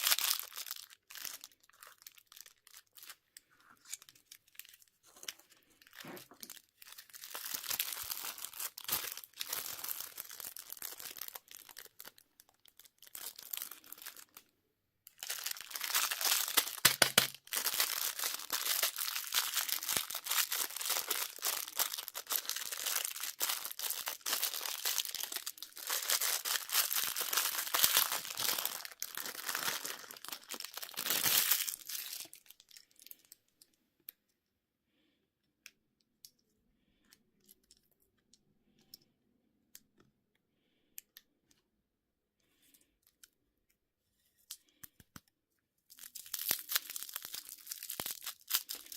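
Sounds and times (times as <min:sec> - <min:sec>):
candy wrappers crinkling: 0:00.0 - 0:14.5, 0:15.1 - 0:33.6, 0:45.9 - 0:48.9.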